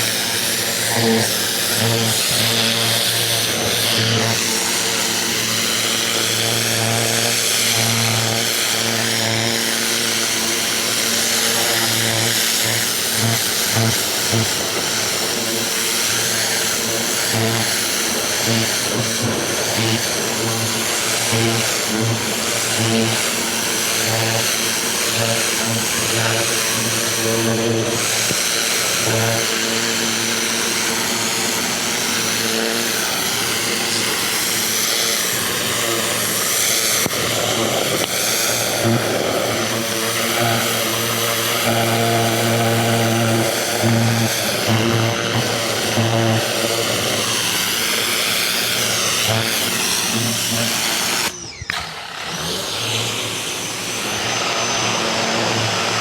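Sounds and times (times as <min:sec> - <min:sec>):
pressure washer spray hissing: 0:00.0 - 0:29.3
pressure washer motor humming: 0:00.0 - 0:56.0.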